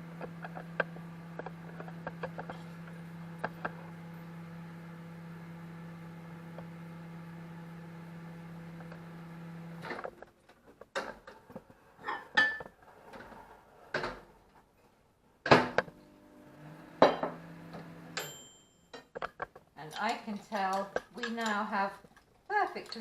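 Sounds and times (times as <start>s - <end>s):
microwave oven humming: 0.0s - 10.2s, 15.5s - 18.8s.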